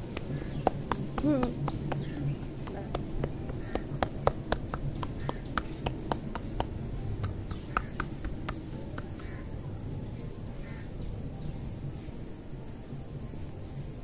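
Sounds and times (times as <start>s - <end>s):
hair snapping between fingers: 0.0s - 9.4s
low background rumble: 0.0s - 14.0s
faint calls: 0.2s - 9.5s.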